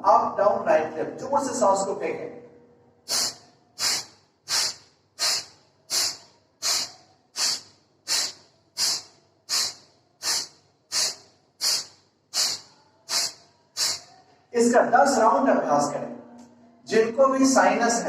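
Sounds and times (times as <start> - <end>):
sharp nasal exhalations: 3.1 - 14.3.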